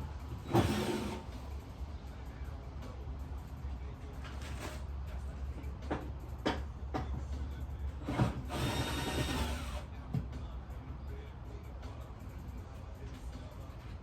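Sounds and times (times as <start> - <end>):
power tool running: 8.0 - 9.9.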